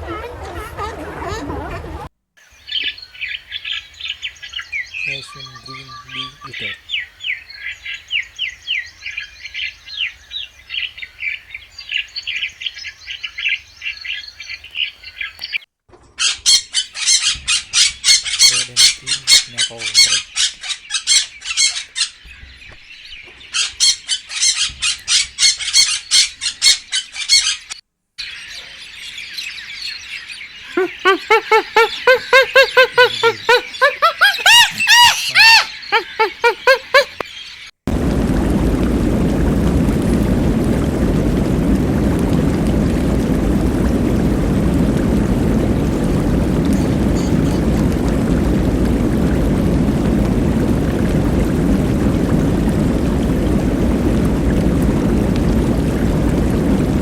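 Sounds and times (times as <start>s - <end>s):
birds chirping: 0.0s - 9.5s, 16.2s - 37.7s, 45.8s - 47.9s.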